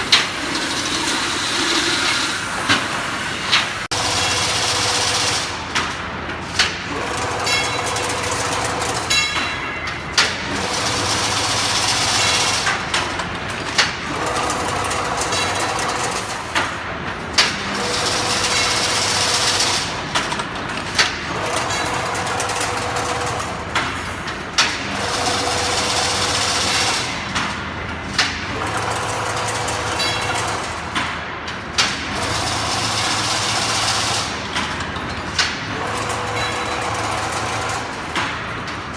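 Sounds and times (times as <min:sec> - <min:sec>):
mechanical clatter: 0:00.0 - 0:38.9
weaving machine sharp clack: 0:00.0 - 0:38.9.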